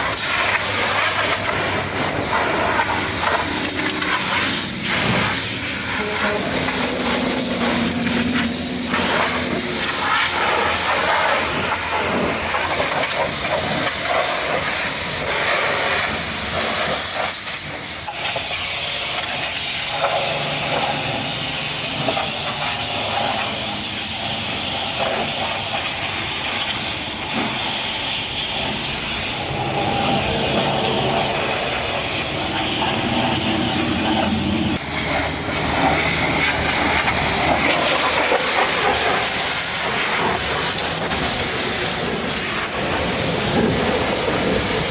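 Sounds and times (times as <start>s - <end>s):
pressure washer spray hissing: 0.0s - 44.9s.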